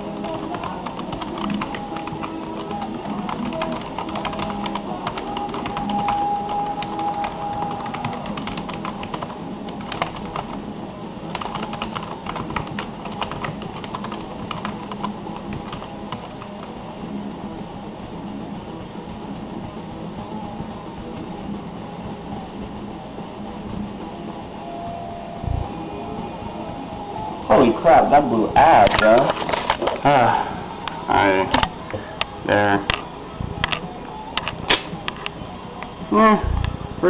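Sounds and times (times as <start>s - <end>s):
fast typing on keyboard: 0.0s - 10.6s, 11.3s - 16.7s.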